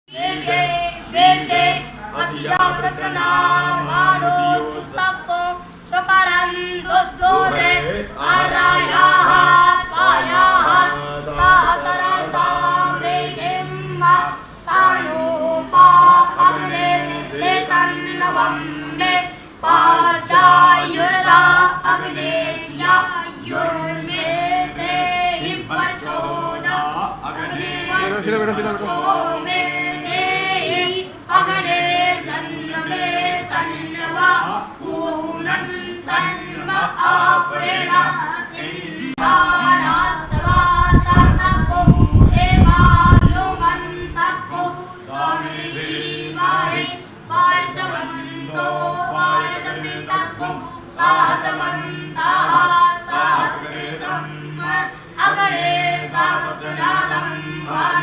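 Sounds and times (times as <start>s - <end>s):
children chanting in unison: 0.1s - 58.0s
low held drone note: 39.0s - 44.2s.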